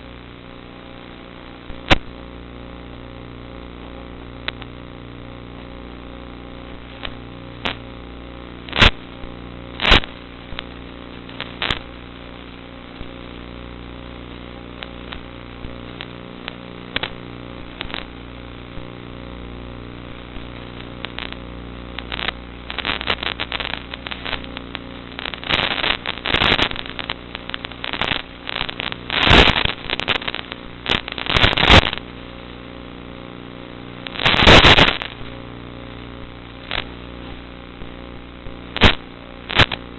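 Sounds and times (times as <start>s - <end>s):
sharp crackles and pops: 0.0s - 39.9s.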